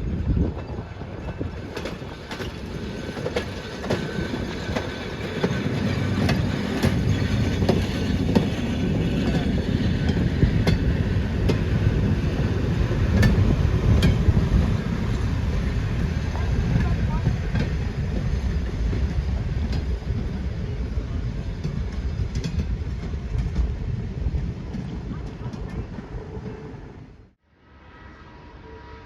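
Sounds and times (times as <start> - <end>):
railway cars rumbling: 0.0 - 29.0
wheels clacking over rails: 1.4 - 20.5.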